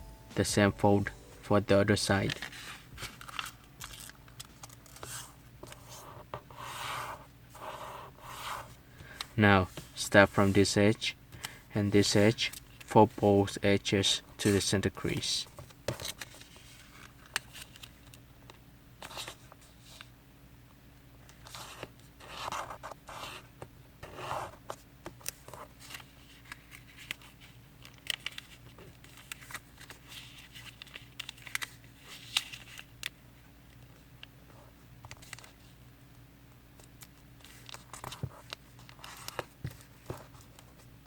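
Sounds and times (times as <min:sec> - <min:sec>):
faint steady hum: 0:00.0 - 0:41.0
paper rustling and creasing: 0:02.0 - 0:06.2, 0:14.5 - 0:18.2, 0:25.2 - 0:33.1, 0:37.1 - 0:40.9.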